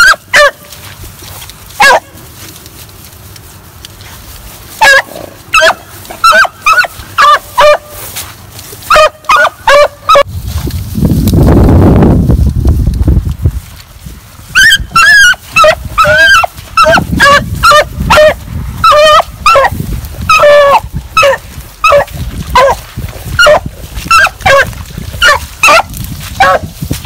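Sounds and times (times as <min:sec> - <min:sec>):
hound baying: 0:00.0 - 0:00.7, 0:01.8 - 0:02.2, 0:04.8 - 0:08.1, 0:08.9 - 0:10.3, 0:14.6 - 0:26.7.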